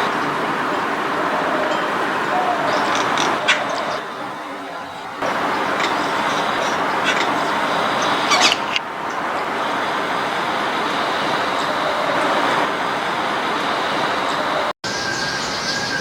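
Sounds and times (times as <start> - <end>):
road traffic noise: 0.0 - 16.0
bird chirps: 2.4 - 9.2.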